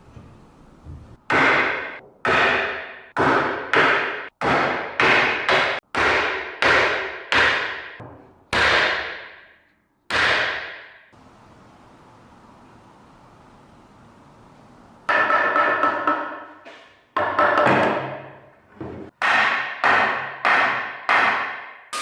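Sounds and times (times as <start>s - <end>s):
hammer striking metal: 1.3s - 11.1s, 15.1s - 16.6s, 19.2s - 22.0s.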